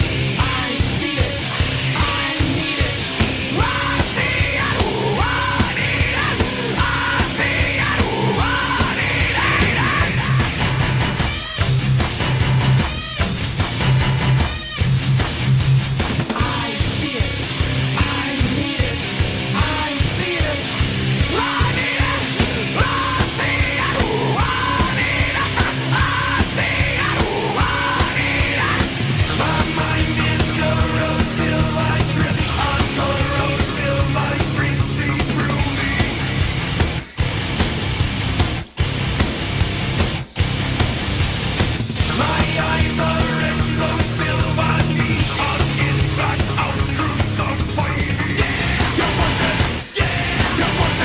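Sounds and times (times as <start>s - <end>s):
heavy rock music: 0.0s - 51.0s
pounding drum beat: 0.0s - 51.0s
shouted vocals: 0.4s - 10.8s, 18.0s - 36.4s, 42.1s - 51.0s.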